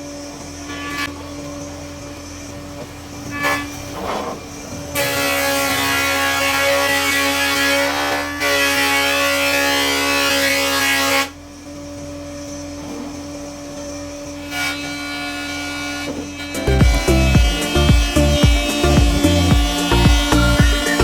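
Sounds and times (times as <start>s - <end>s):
woodworking power tool humming: 0.0s - 21.0s
music with thumping beat: 16.5s - 21.0s.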